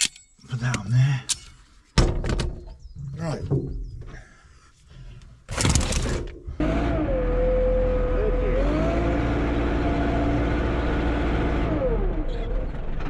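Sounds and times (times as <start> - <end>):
backhoe engine whining: 6.5 - 13.0.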